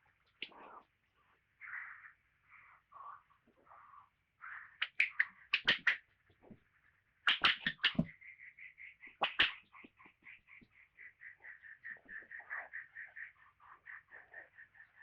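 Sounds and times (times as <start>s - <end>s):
sharp slapping or scuffling: 4.8s - 6.6s, 7.3s - 8.2s, 9.2s - 9.9s.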